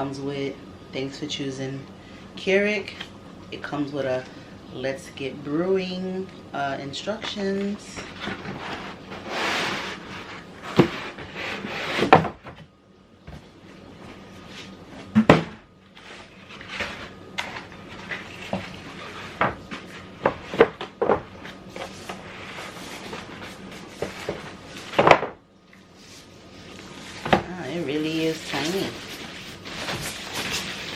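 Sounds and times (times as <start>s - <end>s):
cardboard packaging rustling: 26.0s - 30.9s.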